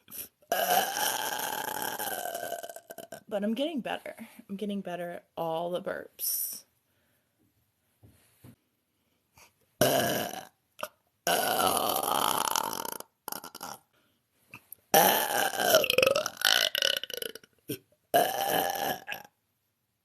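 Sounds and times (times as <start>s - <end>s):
woman belching: 0.5s - 3.3s, 9.8s - 13.8s, 15.0s - 19.3s.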